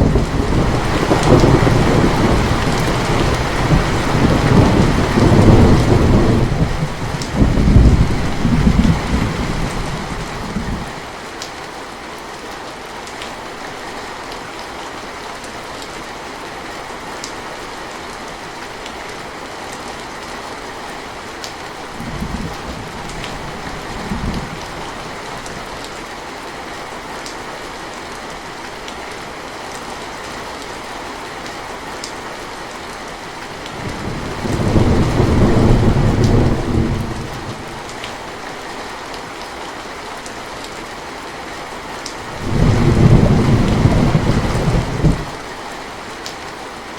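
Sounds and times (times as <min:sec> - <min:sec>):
rolling thunder: 0:00.0 - 0:11.0, 0:33.8 - 0:37.9, 0:42.3 - 0:45.4
heavy rainfall: 0:00.0 - 0:46.9.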